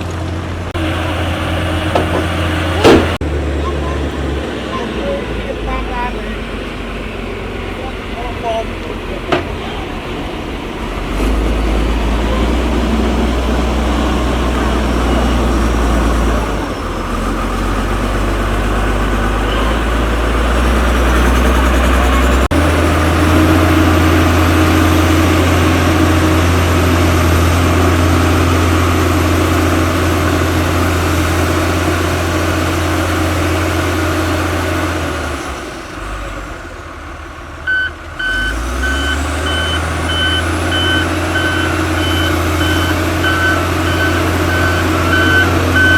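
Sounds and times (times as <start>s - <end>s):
diesel earthmoving machine engine: 0.0s - 45.9s
reversing alarm beeping: 37.7s - 45.9s.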